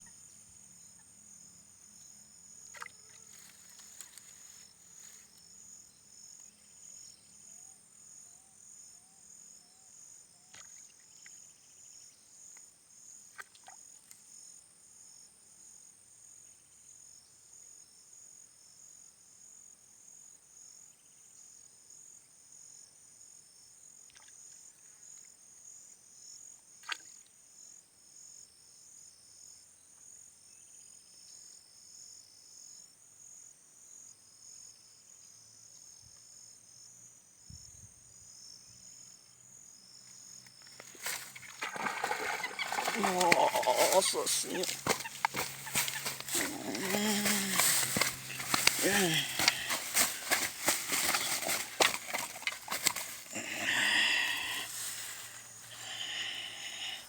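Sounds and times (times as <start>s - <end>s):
high-pitched insect chorus: 38.3s - 57.0s
frogs calling: 40.6s - 57.0s
sharp knocks or splashes: 40.8s - 53.2s.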